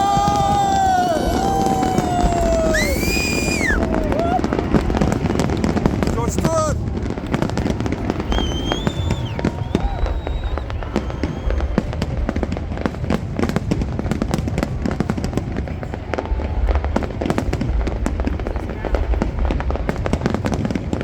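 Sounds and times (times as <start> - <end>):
high whistles: 0.0 - 4.5, 8.2 - 12.5
deep rumbling booms: 0.0 - 21.0
fireworks crackling and popping: 0.0 - 21.0.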